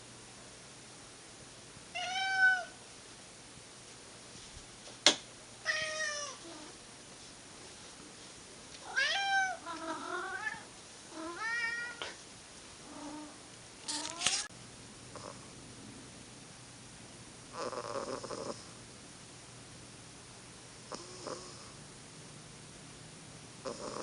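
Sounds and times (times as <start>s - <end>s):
cat meowing: 2.0s - 2.8s, 8.9s - 12.0s.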